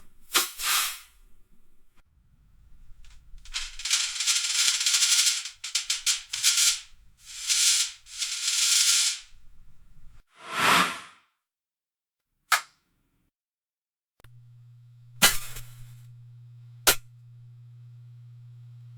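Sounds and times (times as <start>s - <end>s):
paper tearing: 3.5s - 9.2s.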